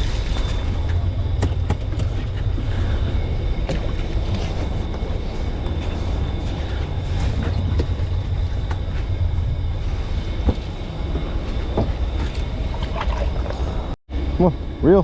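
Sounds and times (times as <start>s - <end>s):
wind and water rumble: 0.0s - 15.0s.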